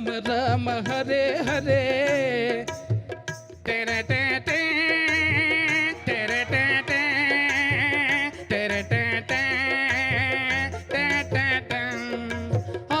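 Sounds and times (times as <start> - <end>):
drum beat: 0.0 - 13.0.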